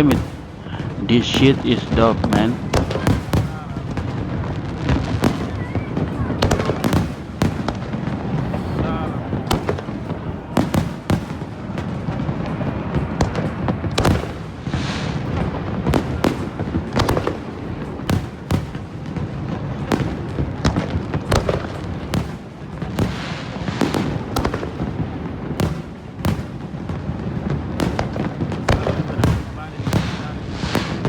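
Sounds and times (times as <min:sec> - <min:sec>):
firework bangs: 0:00.0 - 0:31.0
fireworks rumble and crackle: 0:00.0 - 0:31.0.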